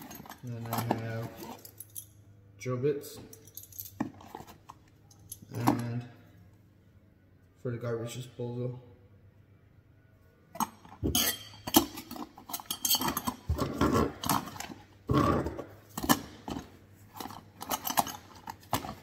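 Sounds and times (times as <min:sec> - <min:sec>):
metal tools clinking: 0:00.0 - 0:02.2, 0:03.2 - 0:06.1, 0:10.6 - 0:14.8, 0:15.9 - 0:19.0.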